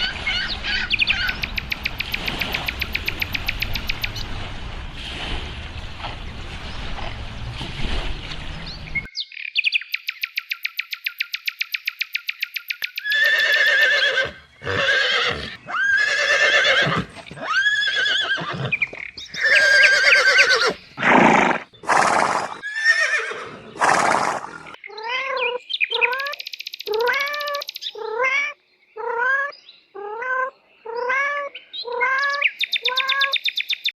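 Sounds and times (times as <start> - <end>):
loud pitched animal cries: 13.0 - 18.8, 19.4 - 21.3, 22.3 - 24.4.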